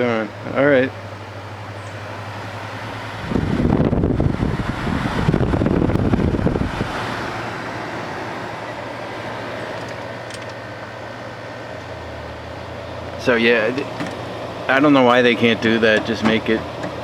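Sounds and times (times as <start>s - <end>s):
dehumidifier humming: 0.0s - 17.0s
loud rumbling noise: 0.0s - 17.0s.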